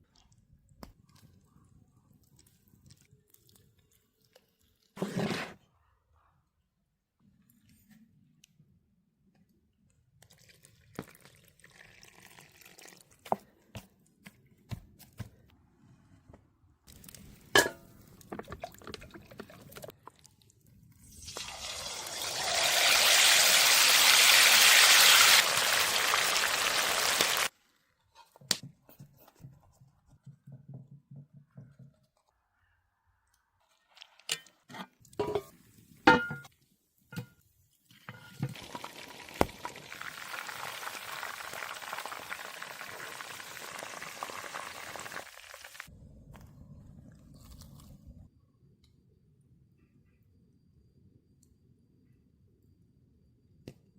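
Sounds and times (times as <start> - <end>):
liquid pouring: 10.2 - 13.3, 16.9 - 20.3, 21.1 - 24.0, 38.1 - 45.9.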